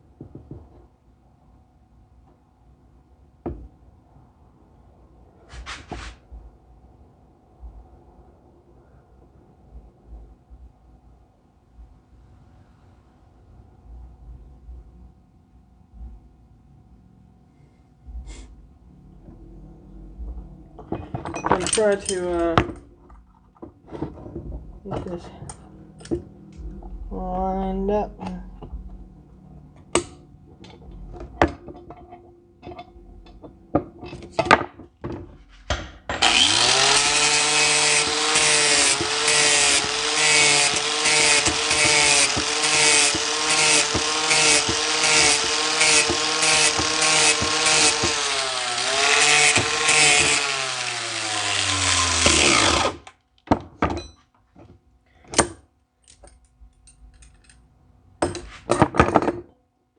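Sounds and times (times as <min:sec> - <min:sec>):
electric power tool running: 0:36.1 - 0:53.1.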